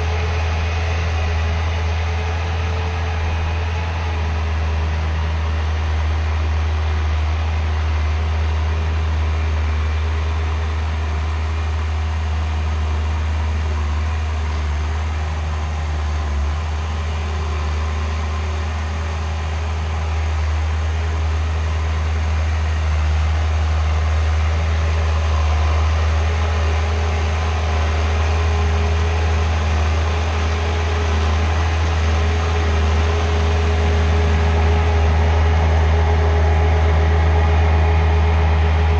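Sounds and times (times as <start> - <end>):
skid steer engine running: 0.0 - 38.9.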